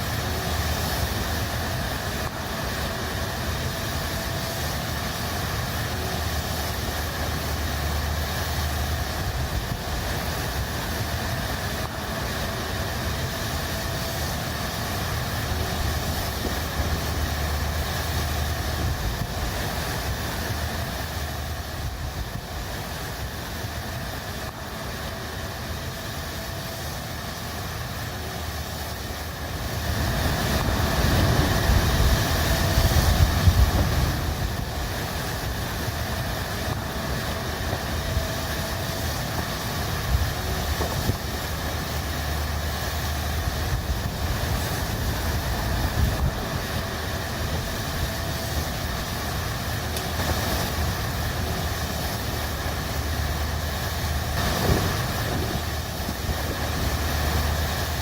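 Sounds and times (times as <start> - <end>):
rain hiss: 0.0 - 58.0
strong wind gusts rumbling: 29.8 - 38.5, 43.4 - 49.3, 54.0 - 57.6.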